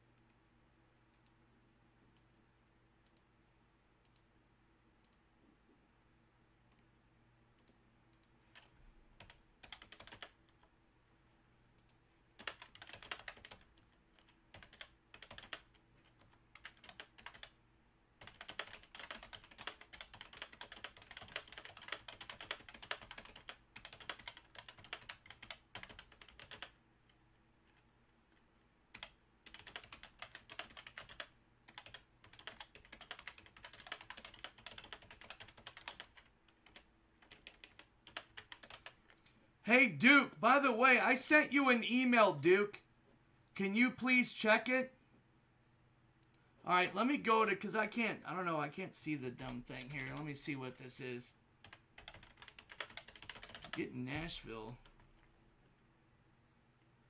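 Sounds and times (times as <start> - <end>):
faint clicks: 4.0 - 4.3, 46.2 - 46.4
typing on a keyboard: 7.6 - 10.7, 11.8 - 17.6, 18.2 - 26.8, 28.9 - 39.0, 49.4 - 50.3, 51.6 - 53.9.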